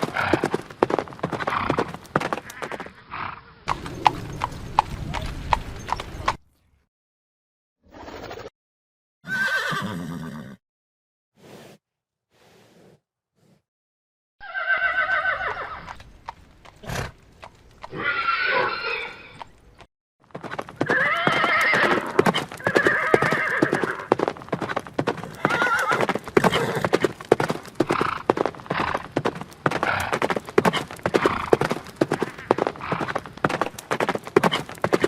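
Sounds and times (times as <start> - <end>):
horse whinnying: 0.0 - 0.6, 9.2 - 10.6, 14.4 - 16.0, 17.8 - 19.5, 20.7 - 33.2
rapid hoofbeats: 0.0 - 2.9, 3.7 - 6.4, 19.4 - 35.0.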